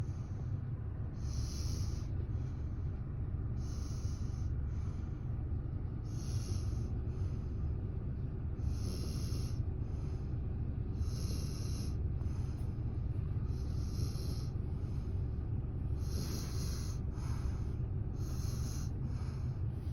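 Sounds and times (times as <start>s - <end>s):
baby snoring: 1.2s - 2.1s, 8.7s - 9.6s, 11.0s - 12.0s, 13.5s - 14.6s, 16.0s - 17.6s, 18.2s - 19.0s
car road noise rumble: 3.5s - 19.9s.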